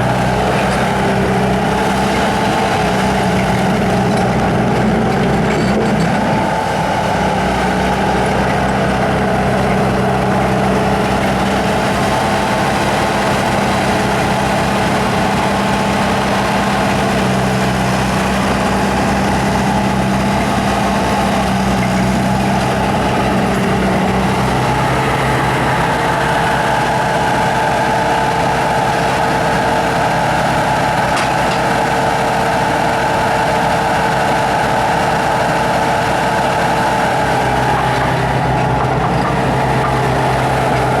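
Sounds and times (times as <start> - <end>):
diesel engine running: 0.0 - 41.0.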